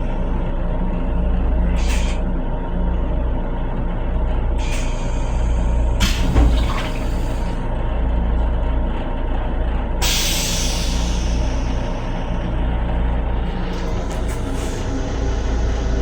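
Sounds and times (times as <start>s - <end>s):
railcar low rumble: 0.0s - 16.0s
thump: 6.0s - 6.8s.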